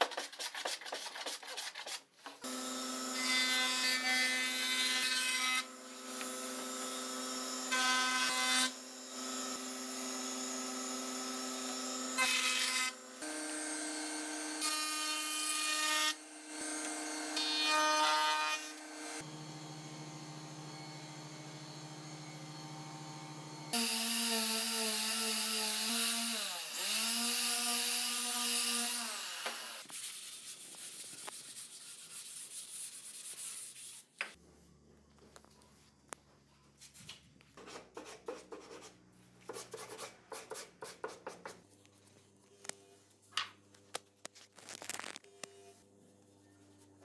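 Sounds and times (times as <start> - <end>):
handwork scraping and tapping wood: 0.0 - 2.4, 37.0 - 41.6
electric power tool on wood: 2.4 - 29.8.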